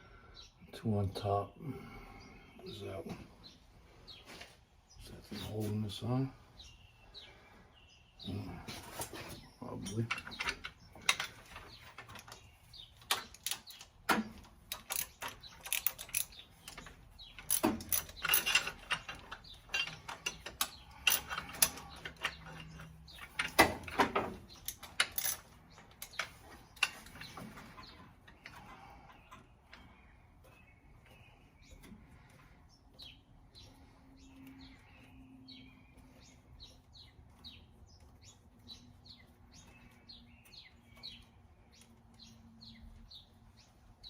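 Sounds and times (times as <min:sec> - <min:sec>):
metal tools knocking: 0:08.7 - 0:29.8
hand ratchet clicking: 0:13.0 - 0:27.3.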